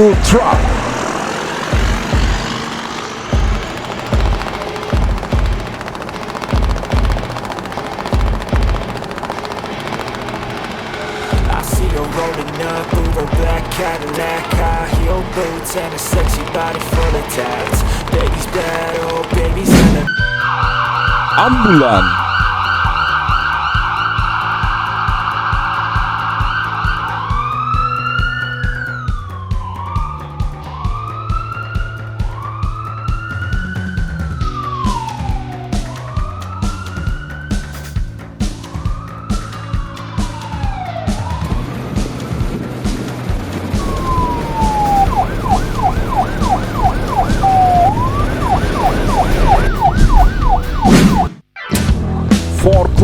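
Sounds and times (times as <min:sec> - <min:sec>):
ambulance siren: 0:00.0 - 0:42.2, 0:43.8 - 0:51.4
pop song with steady beat: 0:11.4 - 0:20.4.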